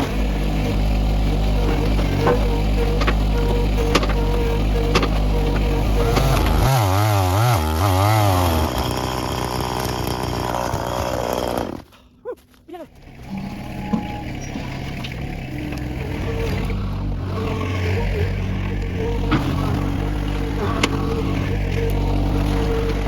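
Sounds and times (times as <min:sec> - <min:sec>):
chainsaw cutting: 0:00.0 - 0:11.9, 0:14.6 - 0:23.0
low steady engine: 0:00.0 - 0:12.2, 0:12.9 - 0:23.0.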